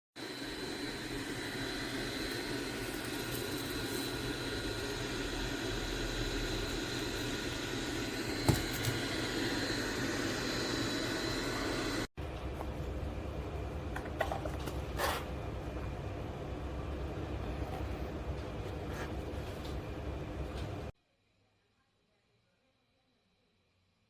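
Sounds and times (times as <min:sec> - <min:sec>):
mechanical whir with high whine: 0:00.2 - 0:12.1.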